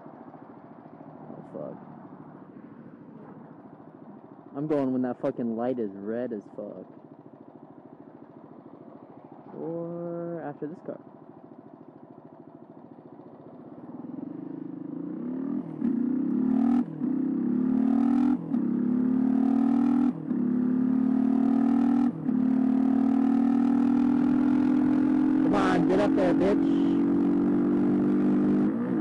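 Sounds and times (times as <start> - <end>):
motorcycle engine revving through gears: 6.4 - 29.0.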